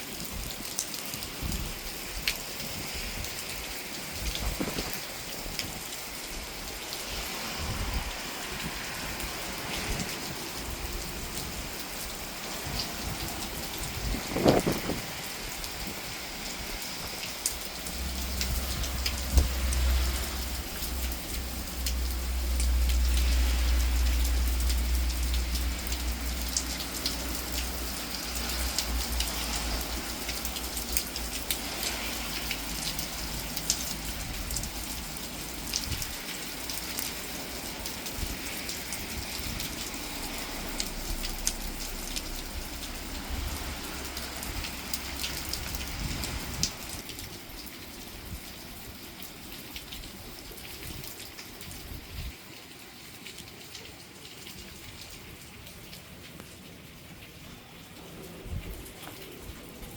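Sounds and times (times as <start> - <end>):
raindrops ticking on surfaces: 0.0 - 59.9
steady rain falling: 0.0 - 59.9
low rumble: 40.0 - 46.5.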